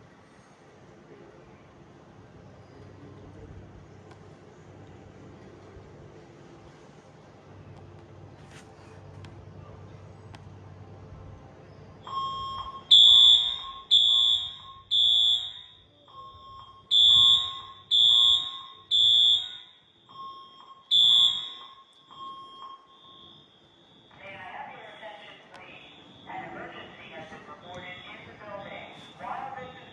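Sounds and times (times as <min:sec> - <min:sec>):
quieter alarm tone: 0:12.0 - 0:26.9
smoke alarm beeps: 0:12.0 - 0:29.9.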